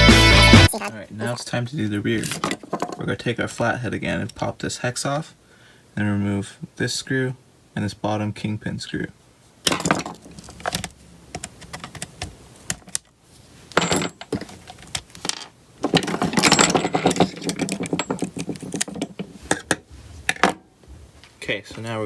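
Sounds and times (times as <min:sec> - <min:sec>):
metal parts and tools clattering: 0:02.2 - 0:03.0, 0:09.7 - 0:10.9, 0:13.7 - 0:20.6.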